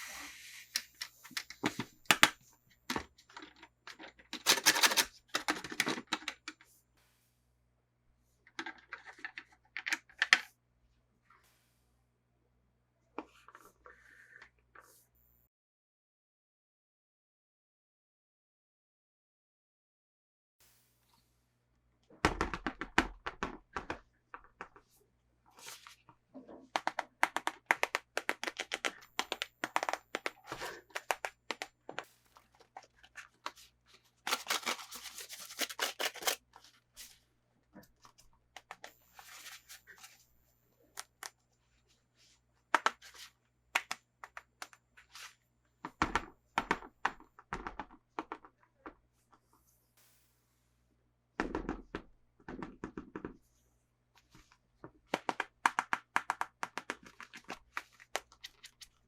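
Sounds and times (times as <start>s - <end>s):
packaging tearing: 4.4s - 5.1s, 34.3s - 36.4s
plastic packaging crinkling: 4.4s - 5.8s, 32.4s - 36.7s.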